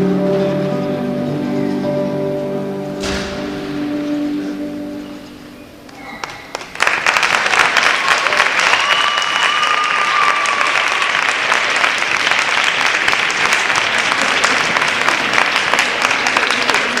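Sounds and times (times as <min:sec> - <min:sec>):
audience applauding: 0:05.9 - 0:17.0.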